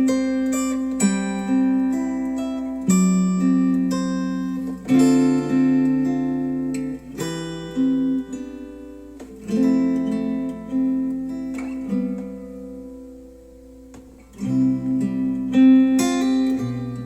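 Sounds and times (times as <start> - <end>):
acoustic guitar chords strummed: 0.0 - 17.0.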